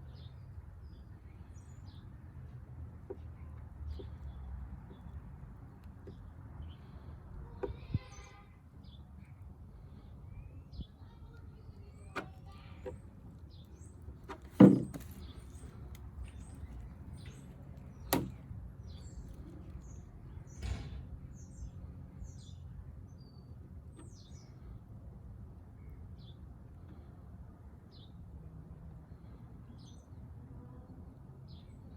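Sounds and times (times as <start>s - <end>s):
small birds chirping: 0.0s - 24.9s.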